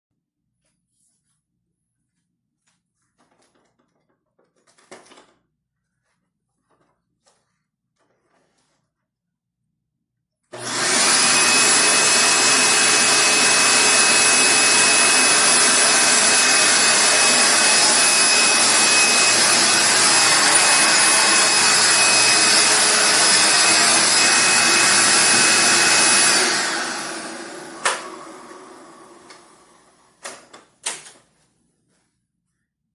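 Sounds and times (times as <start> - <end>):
vacuum cleaner running: 10.5 - 30.4.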